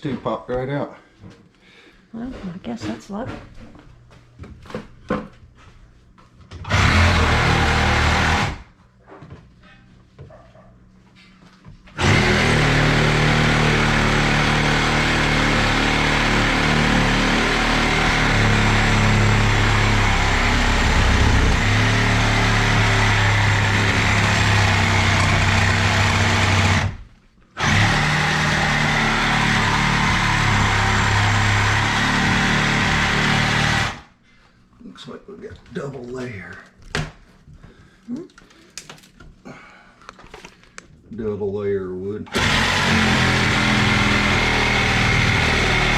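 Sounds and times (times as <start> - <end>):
electric power tool running: 6.6 - 8.7, 12.0 - 34.1, 42.3 - 45.9.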